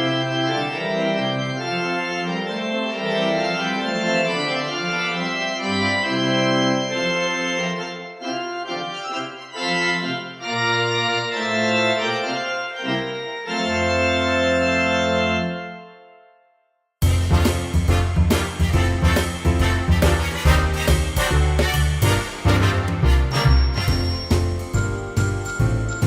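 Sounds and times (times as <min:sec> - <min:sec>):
organ music: 0:00.0 - 0:16.4, 0:17.0 - 0:26.0.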